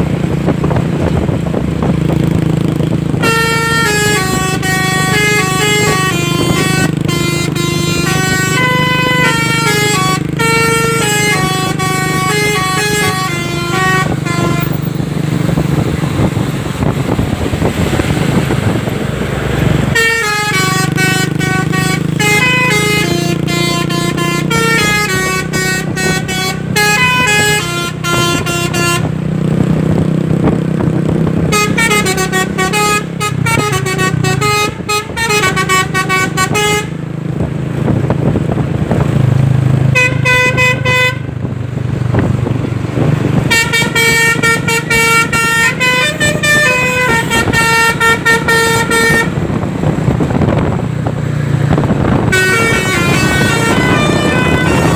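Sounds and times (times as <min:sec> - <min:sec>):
low engine rumble: 0:00.0 - 0:54.9
musical air horn melody: 0:03.2 - 0:15.4, 0:19.9 - 0:29.2, 0:31.4 - 0:37.0, 0:39.9 - 0:41.3, 0:43.4 - 0:50.7, 0:51.9 - 0:54.9.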